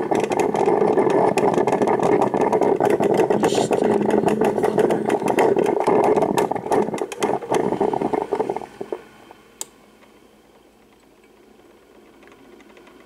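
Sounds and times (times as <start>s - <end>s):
coffee maker gurgling: 0.0s - 9.6s.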